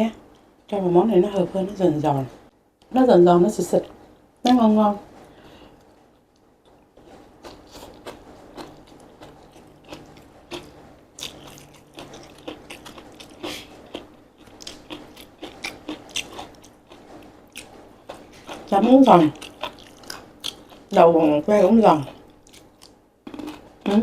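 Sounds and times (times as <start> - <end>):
mouth chewing noodles: 6.7 - 24.0
crisp vegetable crunches: 7.4 - 20.9.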